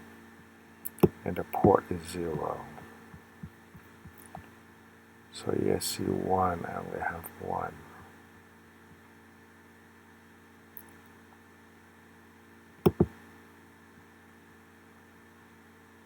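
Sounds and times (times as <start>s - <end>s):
electrical hum: 0.0s - 16.0s
mouse clicks: 0.8s - 1.2s, 12.8s - 13.2s.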